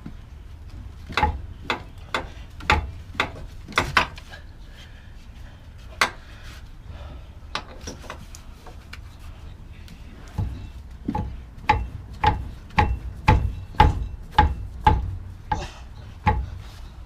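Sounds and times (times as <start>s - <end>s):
hand tools knocking on metal: 1.1s - 4.2s, 10.4s - 16.7s.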